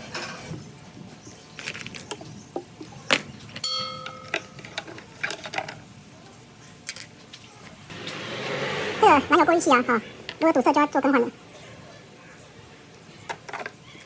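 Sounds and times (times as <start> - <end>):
hand tools clicking and knocking: 1.6 - 5.8
short metallic ring: 3.6 - 4.4.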